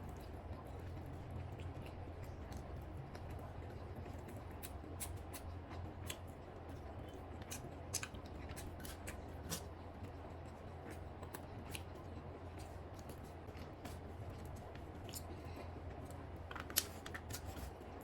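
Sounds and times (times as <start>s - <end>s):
person chewing: 7.1s - 9.7s, 10.9s - 12.0s.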